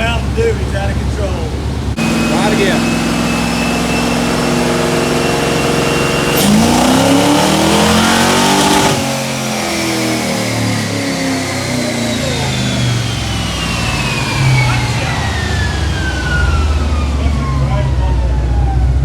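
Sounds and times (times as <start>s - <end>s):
car engine revving on dyno: 0.0s - 19.0s
high whine of dyno rollers: 0.0s - 19.0s.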